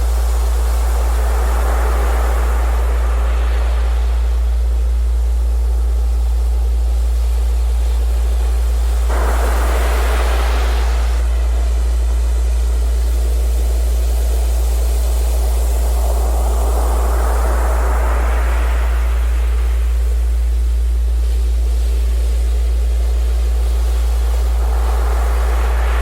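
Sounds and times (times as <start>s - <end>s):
sea surf hissing: 0.0s - 4.8s, 8.9s - 12.8s, 15.0s - 20.4s, 23.4s - 26.0s
wave breaking: 9.1s - 11.5s, 24.3s - 26.0s.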